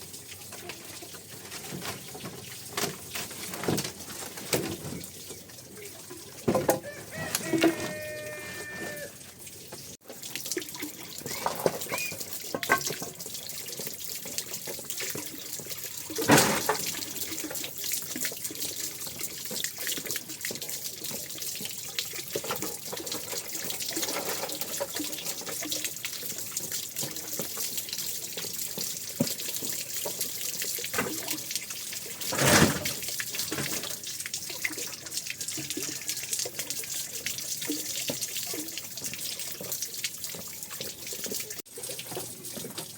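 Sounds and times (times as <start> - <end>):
water running into a basin: 0.0 - 42.9
water splashing: 0.0 - 42.9.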